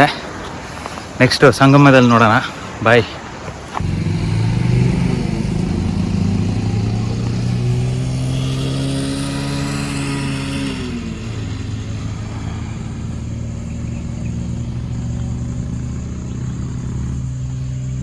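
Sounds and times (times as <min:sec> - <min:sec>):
vehicle engine running: 0:03.8 - 0:18.0.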